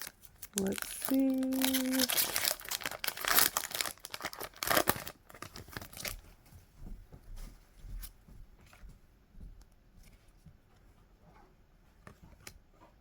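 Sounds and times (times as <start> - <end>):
foil wrapper tearing: 0.0 - 6.2
wrapper rustling: 0.0 - 6.3.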